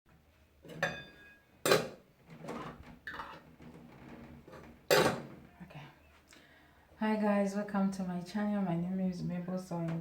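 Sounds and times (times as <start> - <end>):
kitchenware clinking: 0.6 - 3.5, 4.5 - 5.3
kitchenware knocks and scrapes: 0.6 - 5.4.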